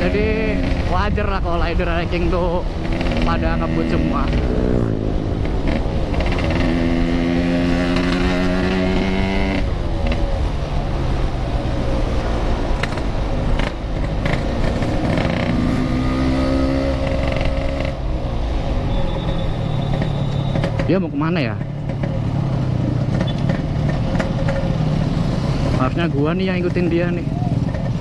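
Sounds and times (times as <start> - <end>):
two-stroke motorcycle engine: 2.6 - 10.3, 19.9 - 28.0.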